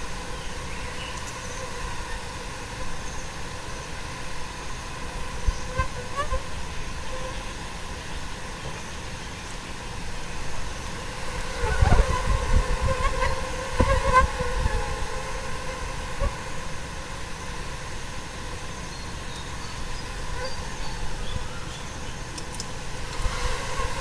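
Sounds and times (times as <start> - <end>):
flies buzzing: 0.0 - 24.0.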